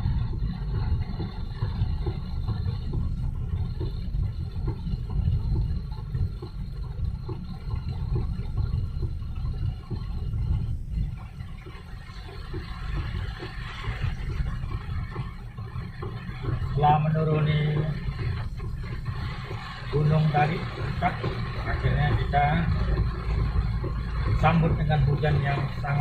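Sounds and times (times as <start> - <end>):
rain and water wash: 10.7 - 16.8.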